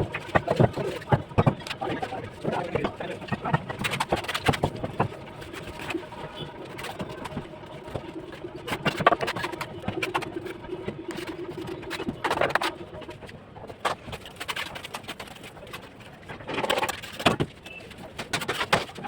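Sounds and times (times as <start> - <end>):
trowel knocking and scraping bricks: 0.1 - 6.0, 16.5 - 19.0.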